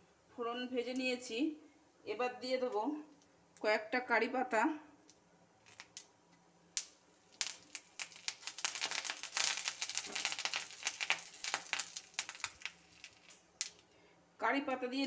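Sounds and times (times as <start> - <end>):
leaves crackling in hot oil: 5.6 - 6.1, 6.7 - 13.9.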